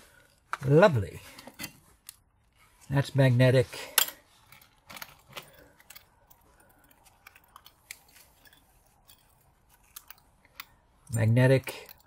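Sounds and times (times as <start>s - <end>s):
small metal parts clinking: 3.9s - 12.0s.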